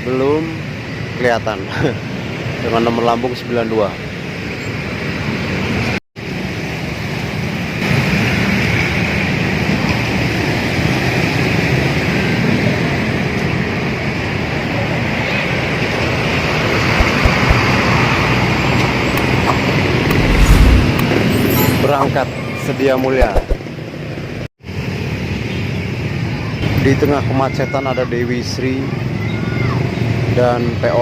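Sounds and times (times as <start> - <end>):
bus engines running: 0.0 - 22.9, 23.6 - 31.0
road traffic rumble: 3.9 - 22.6.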